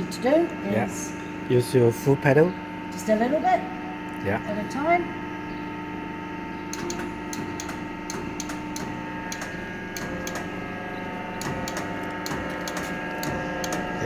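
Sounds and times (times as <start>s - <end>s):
crimping machine hum: 0.0s - 14.0s
sharp machine clicks: 6.7s - 10.7s, 11.3s - 14.0s.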